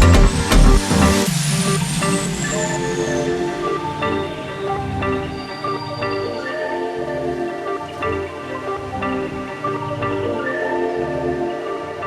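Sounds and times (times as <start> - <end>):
electronic music with heavy bass: 0.0 - 5.5
high synth sweep: 0.0 - 11.5.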